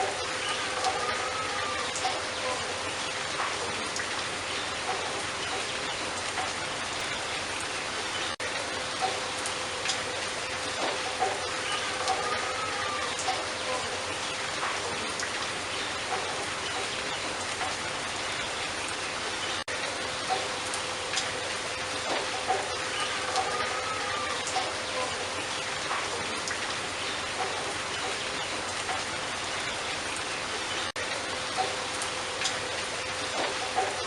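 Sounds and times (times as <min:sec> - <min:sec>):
steady rain hiss: 0:00.0 - 0:34.0.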